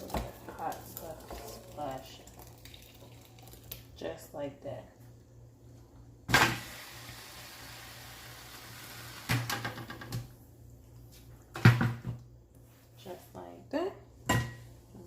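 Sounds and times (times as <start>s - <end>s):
sauce pouring with soft hiss: 0.2s - 4.0s, 6.6s - 9.3s.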